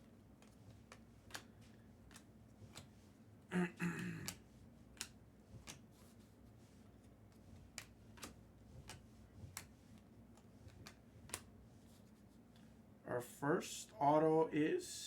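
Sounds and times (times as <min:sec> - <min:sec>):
trading cards clicking and tapping: 0:00.4 - 0:02.9, 0:03.8 - 0:06.1, 0:07.3 - 0:11.6.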